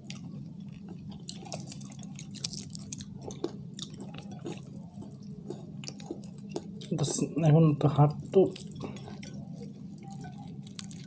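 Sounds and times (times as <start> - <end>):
people chewing fried chicken: 0.0 - 11.0.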